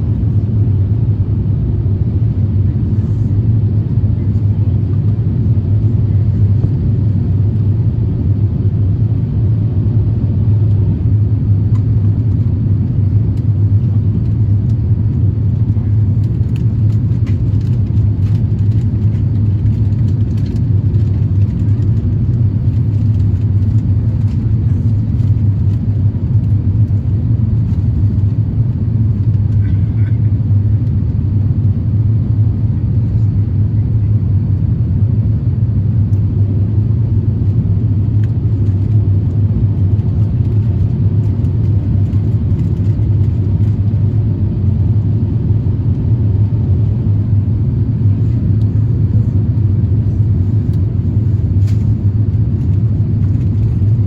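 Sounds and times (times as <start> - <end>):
airliner cabin engine drone: 0.0 - 54.0.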